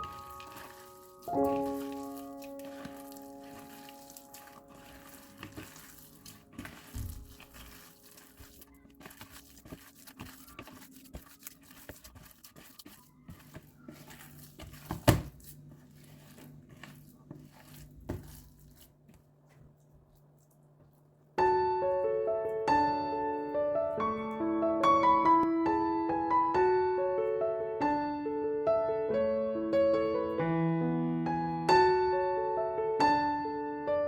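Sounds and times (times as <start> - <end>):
rustling and crinkling: 0.0 - 21.4.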